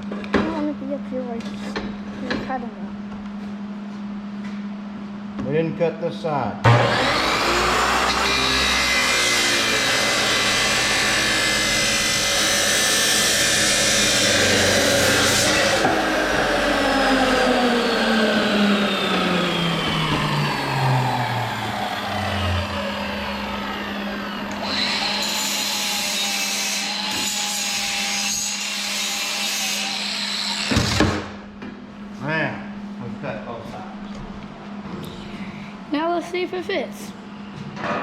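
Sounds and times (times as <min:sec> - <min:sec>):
power tool cutting metal: 0:06.6 - 0:31.4
low hum: 0:13.6 - 0:24.6.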